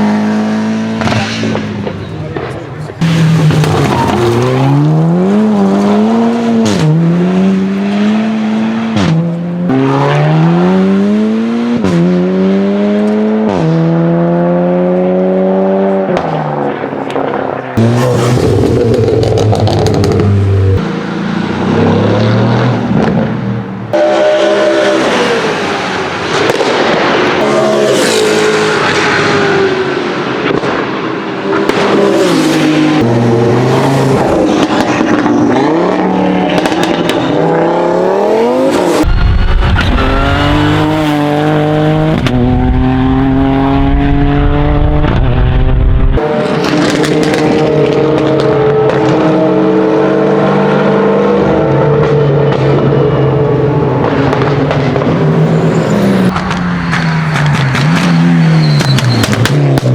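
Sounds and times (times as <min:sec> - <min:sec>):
race car engines revving: 0:00.0 - 0:59.9
exhaust pops and bangs: 0:44.3 - 0:49.2, 0:56.3 - 0:59.9.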